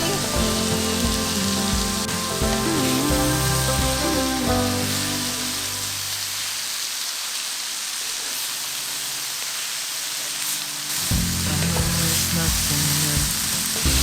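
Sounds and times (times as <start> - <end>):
background song: 0.0 - 6.4, 11.1 - 14.0
vegetables sizzling in hot oil: 0.0 - 14.0.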